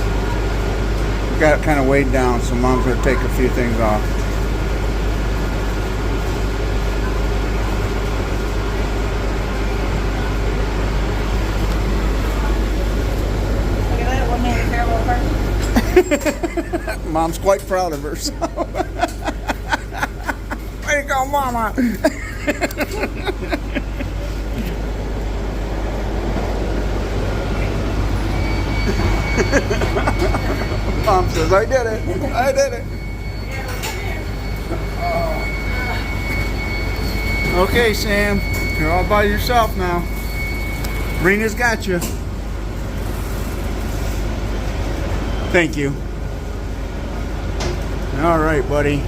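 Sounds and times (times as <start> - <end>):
air conditioning hiss: 0.0 - 33.3
bus engine idling: 0.0 - 49.0
faint high whine: 6.8 - 42.2.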